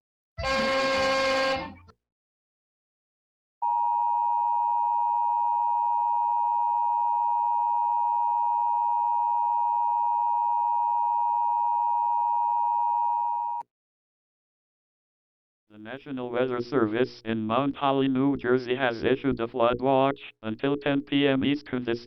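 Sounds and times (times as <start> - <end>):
steady electronic alarm tone: 3.6 - 13.6.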